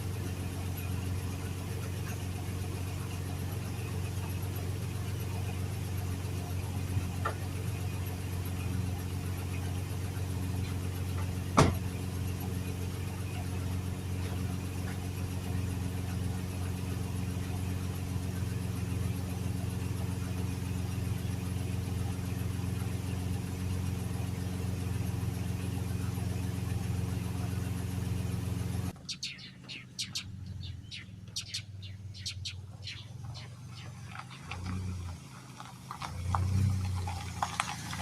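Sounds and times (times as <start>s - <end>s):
birds chirping: 0.0s - 35.2s
truck engine idling: 0.0s - 38.0s.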